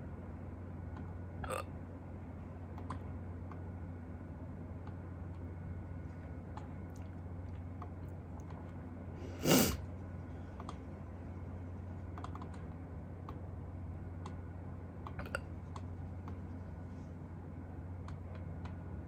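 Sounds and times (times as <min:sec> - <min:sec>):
steady low hum: 0:00.0 - 0:19.0
person hiccuping: 0:01.4 - 0:01.7.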